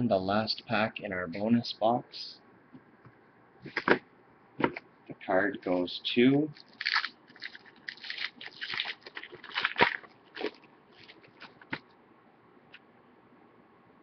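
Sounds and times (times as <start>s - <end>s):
plastic wrapper crinkling: 6.6s - 11.8s.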